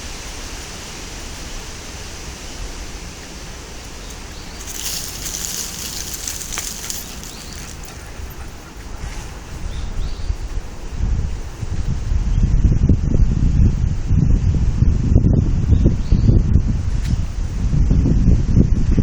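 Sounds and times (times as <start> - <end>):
leaves rustling in wind: 0.0 - 13.2
wind rumble on microphone: 0.0 - 19.0.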